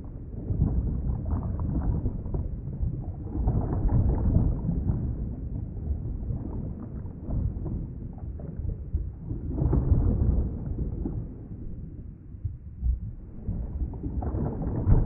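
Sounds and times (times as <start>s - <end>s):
muffled underwater rumble: 0.0s - 15.0s.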